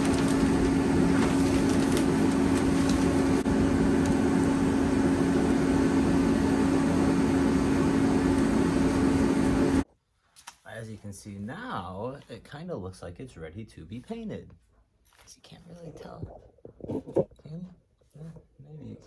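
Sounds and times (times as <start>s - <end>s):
power sander running: 0.0s - 9.8s.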